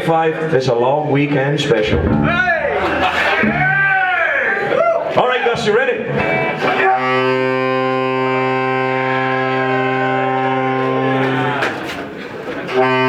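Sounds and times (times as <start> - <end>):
band holding long low note: 1.8 - 3.9, 7.0 - 11.6.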